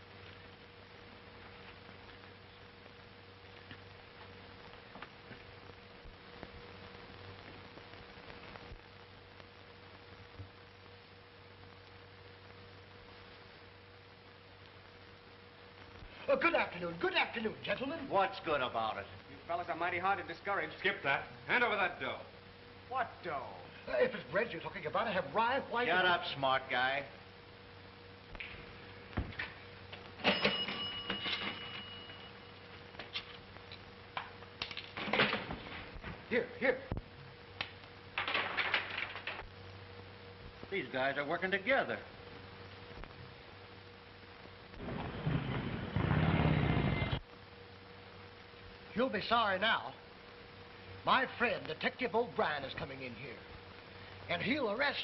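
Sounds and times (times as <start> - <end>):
film soundtrack hiss and hum: 0.0 - 55.0
clatter with bell-like ring: 30.2 - 32.3.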